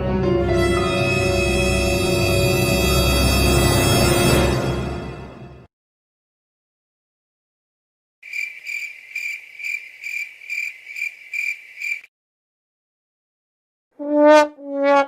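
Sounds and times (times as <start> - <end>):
crickets chirping: 8.2 - 12.1.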